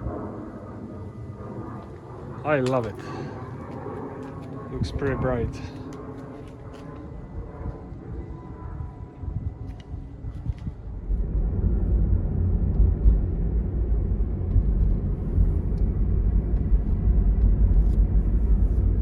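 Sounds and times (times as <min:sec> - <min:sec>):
car road rumble: 0:11.0 - 0:19.0.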